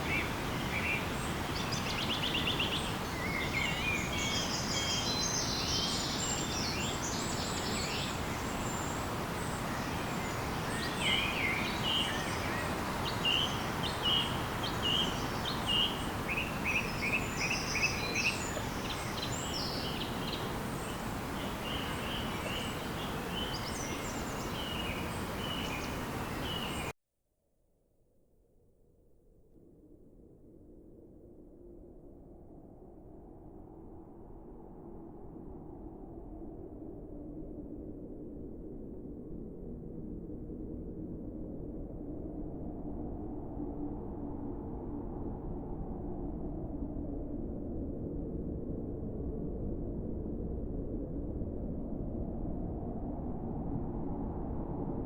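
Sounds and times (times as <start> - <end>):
birds chirping: 10.1 - 26.9.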